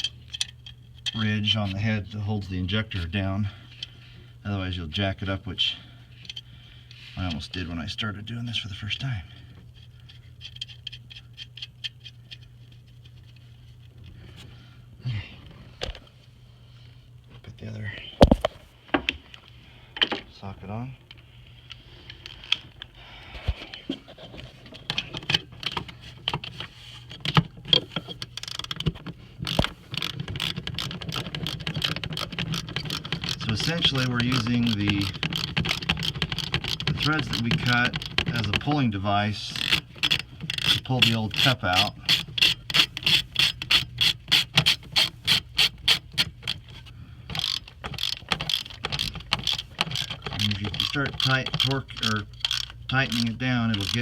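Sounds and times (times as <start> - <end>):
steady low hum: 0.0 - 54.0
hand ratchet clicking: 28.0 - 54.0.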